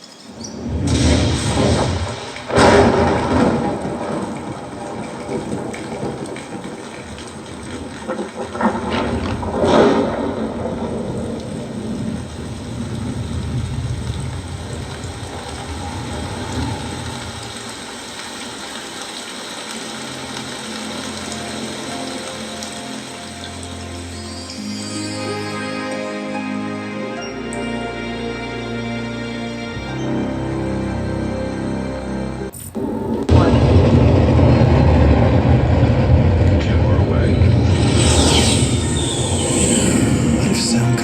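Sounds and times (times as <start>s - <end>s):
heavy rain rushing: 0.0s - 41.0s
thunder crashing: 0.2s - 18.8s, 32.8s - 41.0s.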